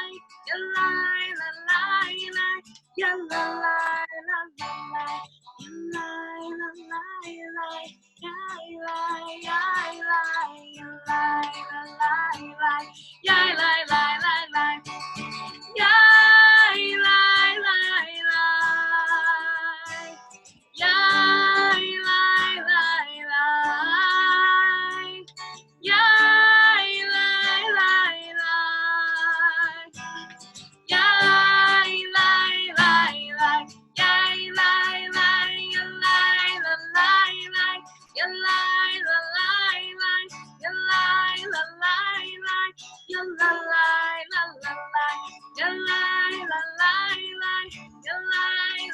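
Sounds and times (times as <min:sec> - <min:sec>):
woman singing: 0:00.0 - 0:15.0, 0:15.7 - 0:20.2, 0:20.8 - 0:30.2, 0:30.9 - 0:48.9
acoustic guitar: 0:00.0 - 0:48.9
children singing: 0:09.3 - 0:14.8, 0:15.8 - 0:20.0, 0:20.8 - 0:25.3, 0:30.9 - 0:48.9.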